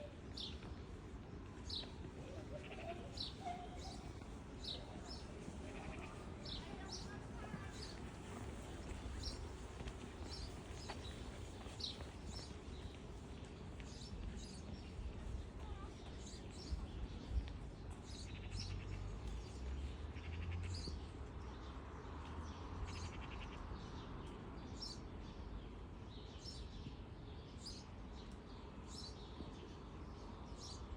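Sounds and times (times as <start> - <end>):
birds chirping: 1.6 - 21.6.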